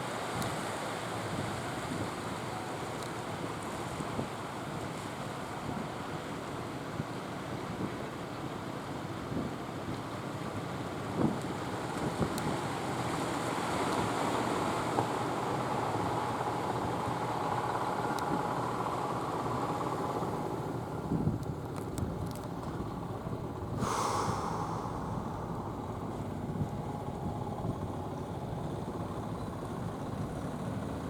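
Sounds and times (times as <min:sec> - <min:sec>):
wind: 0:00.0 - 0:31.0
short rush of noise: 0:23.8 - 0:26.4.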